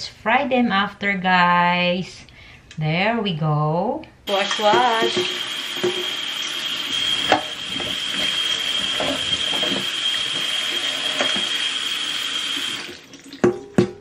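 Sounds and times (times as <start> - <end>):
tap water running: 4.3 - 14.0
knocks in a sink: 4.7 - 6.1, 13.4 - 14.0.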